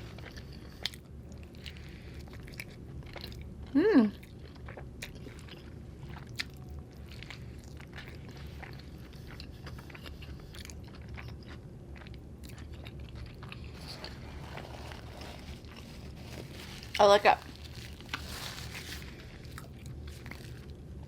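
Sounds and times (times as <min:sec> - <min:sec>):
person chewing food: 0:00.0 - 0:21.0.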